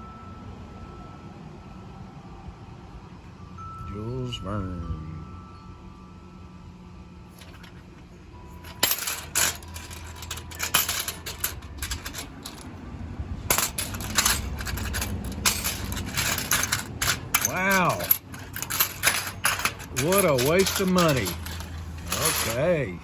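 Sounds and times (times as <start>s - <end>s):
metal tokens clinking: 7.3s - 12.8s, 13.5s - 23.0s.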